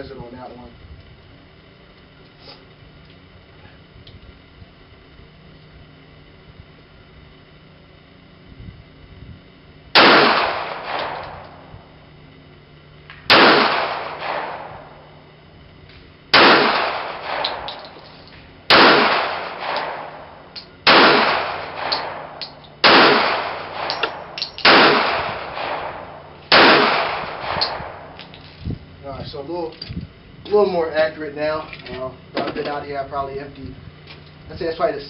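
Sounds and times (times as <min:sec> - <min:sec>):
handgun shots with echo: 0:10.0 - 0:11.6, 0:13.3 - 0:14.8, 0:16.4 - 0:18.0, 0:18.7 - 0:20.3, 0:20.9 - 0:28.3.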